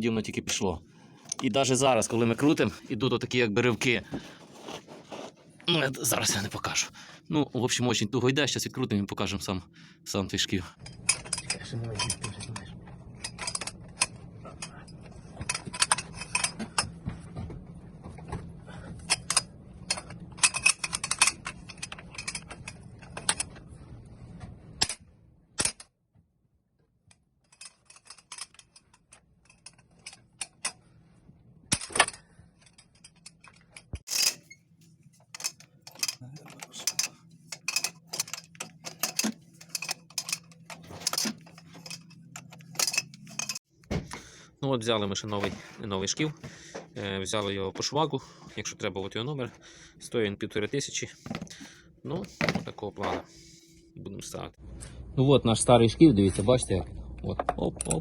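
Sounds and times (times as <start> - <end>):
wrench clicking and clinking: 31.7 - 34.6, 35.3 - 43.6.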